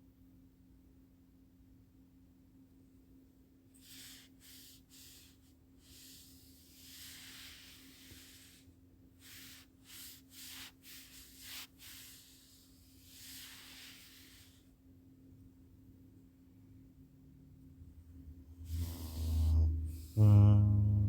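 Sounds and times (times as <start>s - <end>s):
low steady hum: 0.0s - 21.0s
hissing noise: 18.7s - 20.6s.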